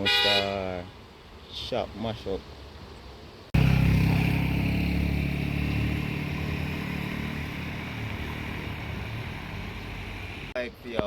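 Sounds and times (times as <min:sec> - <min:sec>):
vehicle engine humming: 0:03.6 - 0:10.6.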